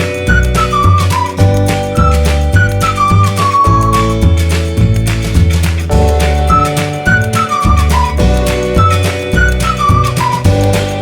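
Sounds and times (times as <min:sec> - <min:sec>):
upbeat instrumental music: 0:00.0 - 0:11.0.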